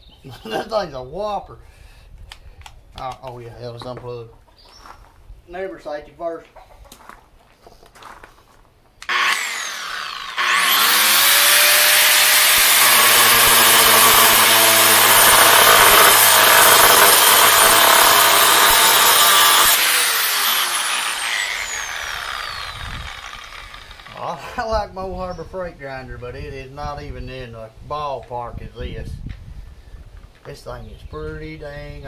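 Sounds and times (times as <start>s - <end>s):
angle grinder cutting: 9.0s - 24.4s.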